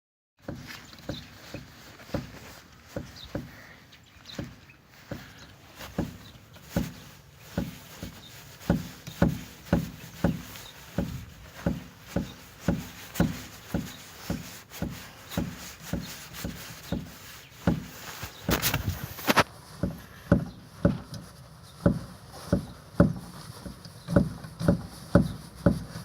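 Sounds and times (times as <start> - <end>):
dull suspension knocks: 4.3 - 19.0, 21.8 - 25.9.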